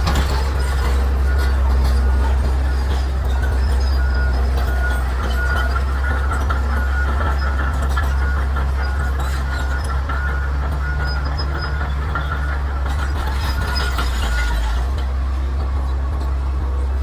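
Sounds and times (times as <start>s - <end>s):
bulldozer diesel engine droning: 0.0s - 17.0s
steel tracks clanking: 0.0s - 17.0s
high squeal: 7.0s - 14.8s.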